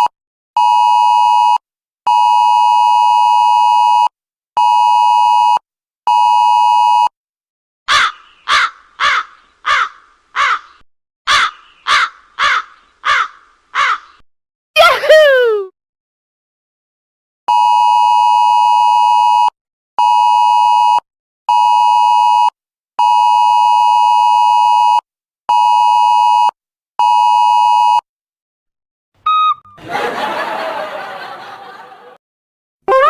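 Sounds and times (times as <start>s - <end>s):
censor bleep: 29.2s - 29.8s.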